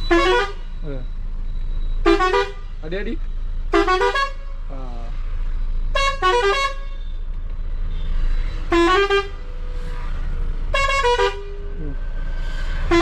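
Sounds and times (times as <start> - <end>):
multi-tone bus horn tunes: 0.0 - 0.7, 2.0 - 2.7, 3.7 - 4.6, 5.9 - 7.1, 7.9 - 11.8, 12.8 - 13.0.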